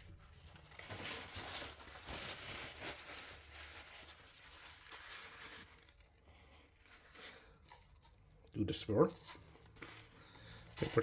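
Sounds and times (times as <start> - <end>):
paper towel rustling and crinkling: 0.0 - 8.1, 8.9 - 11.0.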